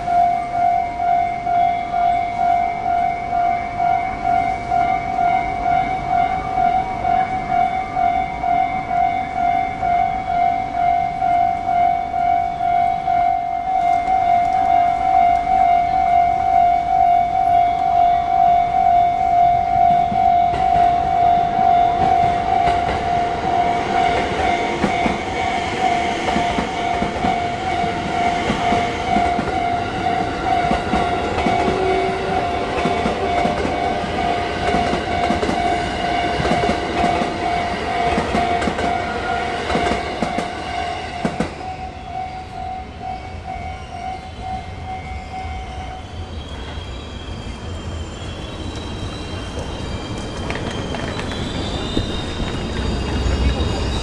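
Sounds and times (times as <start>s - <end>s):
pulsing electronic warning bell: 0.0s - 46.6s
train wheels clattering on rails: 19.9s - 42.3s, 48.3s - 54.0s.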